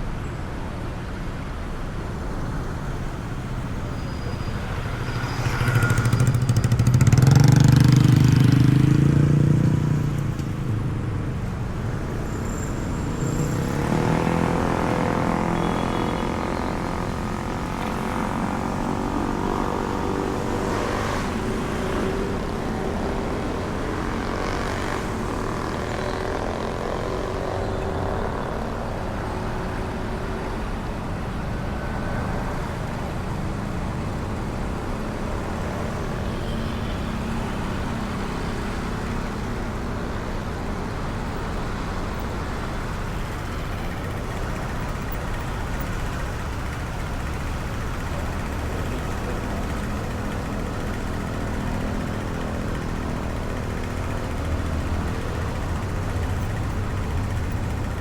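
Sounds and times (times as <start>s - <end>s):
road noise: 0.0s - 58.0s
scooter engine running: 3.1s - 10.9s, 32.5s - 58.0s.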